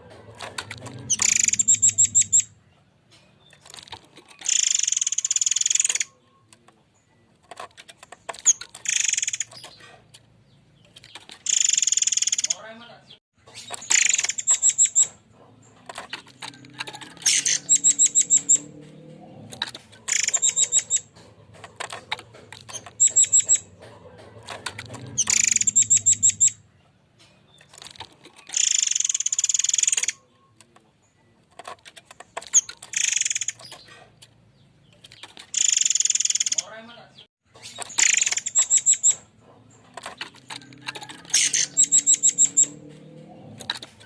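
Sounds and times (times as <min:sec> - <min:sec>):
bird rattling call: 0:00.3 - 0:02.6, 0:03.5 - 0:06.1, 0:07.6 - 0:09.9, 0:11.0 - 0:12.6, 0:13.6 - 0:18.8, 0:19.4 - 0:26.6, 0:27.6 - 0:30.2, 0:31.6 - 0:34.1, 0:35.0 - 0:36.7, 0:37.6 - 0:42.8.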